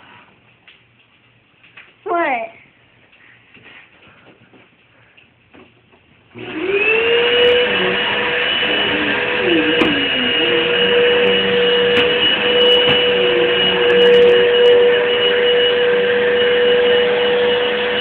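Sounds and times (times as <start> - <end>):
vacuum cleaner motor whining: 6.3 - 18.0.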